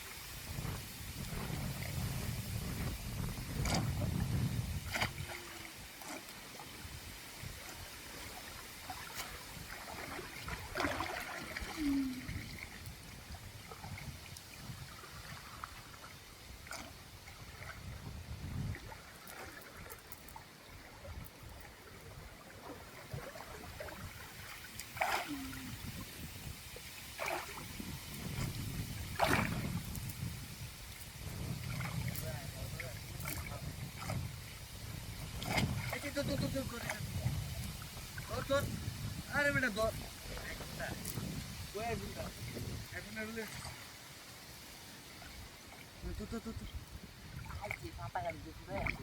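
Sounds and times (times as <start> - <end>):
water trickling and gurgling: 0.1 - 49.0
short splashes or knocks: 3.6 - 4.2, 4.8 - 6.5, 8.2 - 12.8, 22.7 - 25.7, 27.2 - 30.0, 35.4 - 37.0.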